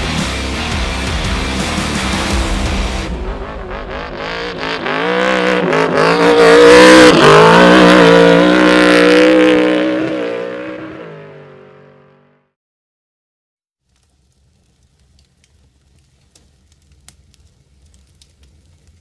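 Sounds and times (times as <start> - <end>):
race vehicle engine revving: 0.0 - 12.1.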